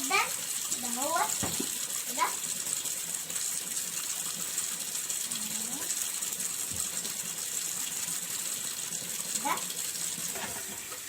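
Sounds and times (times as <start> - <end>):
glasses being rinsed: 0.0 - 11.0
kitchen tap running into sink: 0.0 - 11.0.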